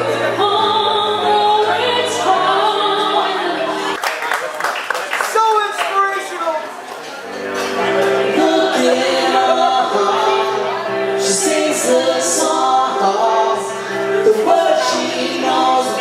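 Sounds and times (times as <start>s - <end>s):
live pop-rock music with singing: 0.0s - 4.0s, 7.3s - 16.0s.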